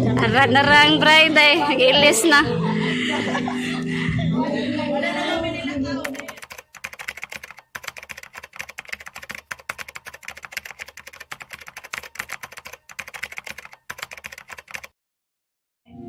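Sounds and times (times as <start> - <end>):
keyboard typing clicks: 6.0 - 14.9.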